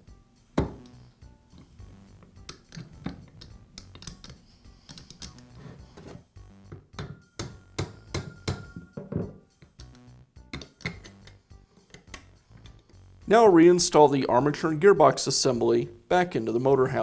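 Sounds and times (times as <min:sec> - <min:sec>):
quiet background music: 0:00.0 - 0:17.0
metal parts clicking and knocking: 0:02.4 - 0:05.5, 0:10.5 - 0:12.9.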